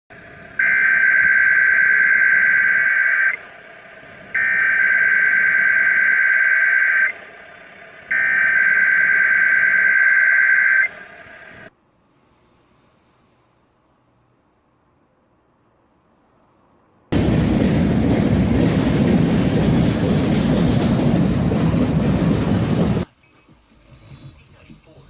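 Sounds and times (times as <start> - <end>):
radio hiss: 23.1 - 25.0.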